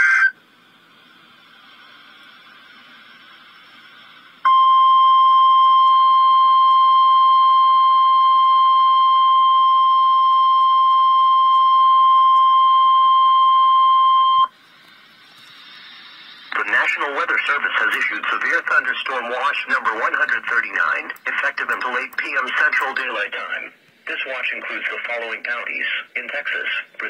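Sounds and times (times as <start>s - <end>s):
faint radio hiss: 0.0s - 5.8s, 14.3s - 27.0s
loud high warning beep: 4.4s - 14.6s.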